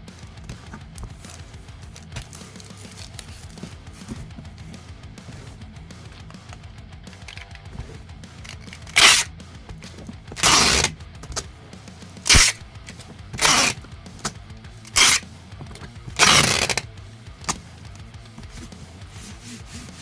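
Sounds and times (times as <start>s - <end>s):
background music: 0.0s - 20.0s
packing materials rustling: 0.5s - 6.4s.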